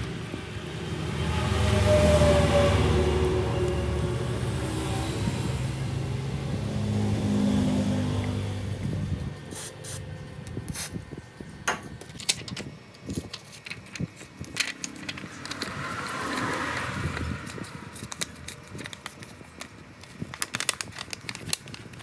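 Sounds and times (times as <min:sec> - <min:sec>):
small tools clicking and tapping: 0:11.7 - 0:22.0.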